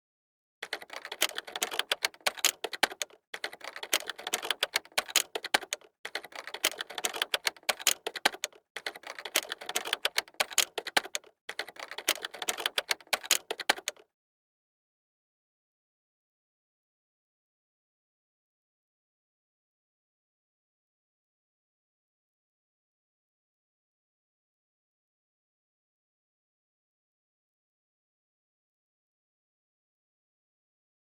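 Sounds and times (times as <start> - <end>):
rapid typing keystrokes: 0.6 - 14.0.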